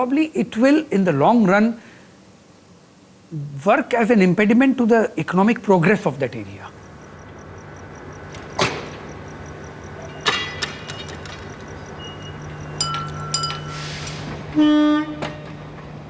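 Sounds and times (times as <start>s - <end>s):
steady low hum: 0.0s - 16.0s
train horn toot: 13.7s - 15.7s.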